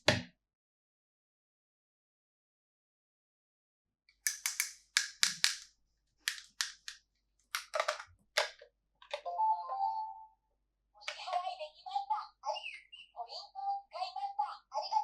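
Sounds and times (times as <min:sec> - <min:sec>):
plastic toy pieces clicking: 0:04.2 - 0:05.7, 0:06.3 - 0:08.6.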